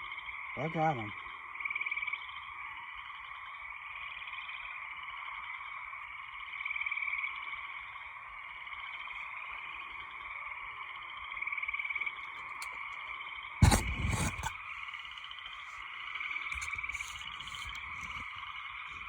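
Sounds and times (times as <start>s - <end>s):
frogs calling: 0.0s - 19.0s
rapid frog trill: 0.0s - 19.0s.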